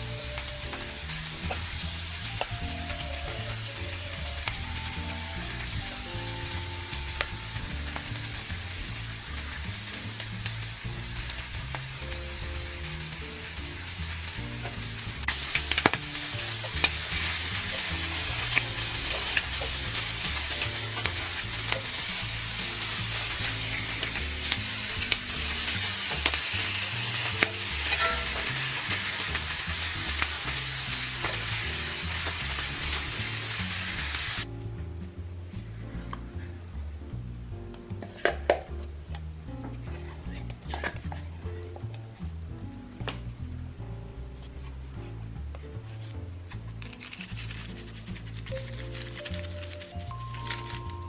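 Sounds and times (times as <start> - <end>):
food sizzling in a pan: 0.0 - 34.5, 47.2 - 51.0
background music: 0.0 - 51.0
utensil stirring and clicking: 15.2 - 33.0, 46.8 - 51.0.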